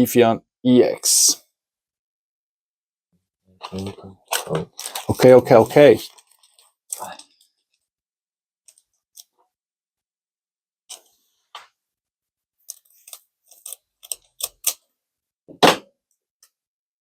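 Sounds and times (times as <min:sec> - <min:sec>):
trading cards being handled: 0:03.6 - 0:07.5, 0:12.6 - 0:14.8.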